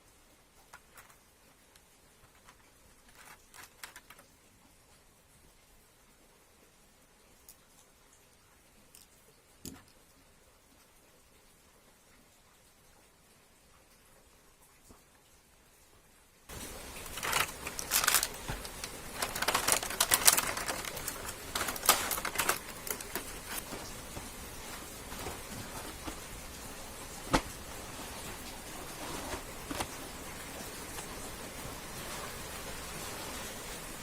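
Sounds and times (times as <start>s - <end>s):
steady hiss: 0.0s - 34.0s
toy train pieces clicking: 2.4s - 4.3s, 17.1s - 23.6s.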